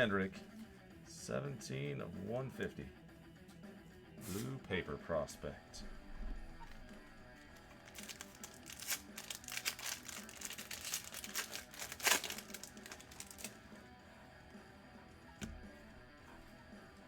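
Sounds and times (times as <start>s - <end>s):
quiet background music: 0.0s - 17.0s
wrapper crinkling and tearing: 7.5s - 13.6s.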